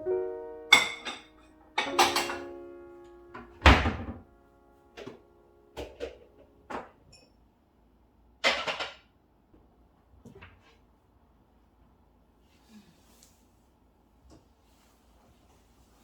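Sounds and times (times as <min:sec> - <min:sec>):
piano note: 0:00.0 - 0:07.1.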